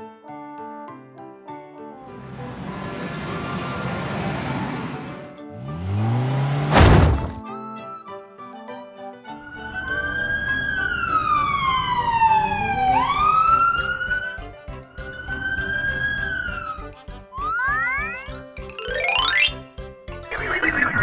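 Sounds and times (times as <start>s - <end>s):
cartoon siren wailing: 9.6s - 14.4s, 15.0s - 16.8s.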